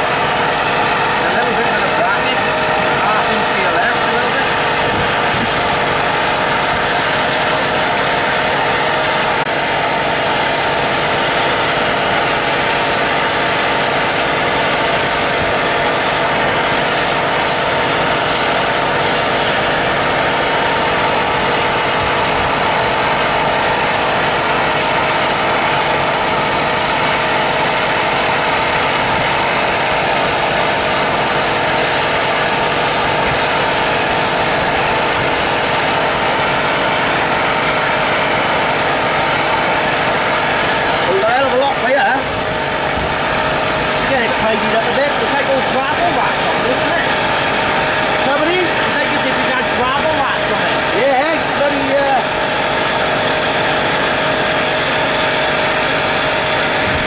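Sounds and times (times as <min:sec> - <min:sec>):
machine running loudly: 0:00.0 - 0:57.0.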